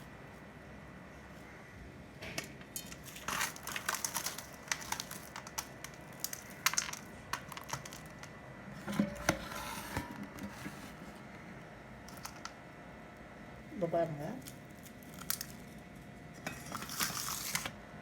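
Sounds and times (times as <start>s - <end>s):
puffed rice crackling and crunching: 2.8s - 8.5s, 14.4s - 17.8s.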